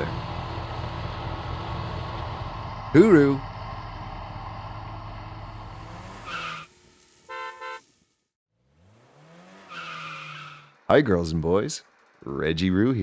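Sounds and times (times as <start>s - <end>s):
engine revving: 0.0s - 7.3s, 8.5s - 13.0s
low engine hum: 0.0s - 7.3s
car horn toots: 7.3s - 8.0s.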